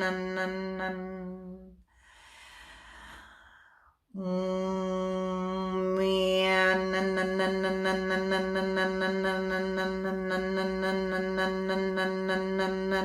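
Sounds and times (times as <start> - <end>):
breath in: 1.9 - 4.0.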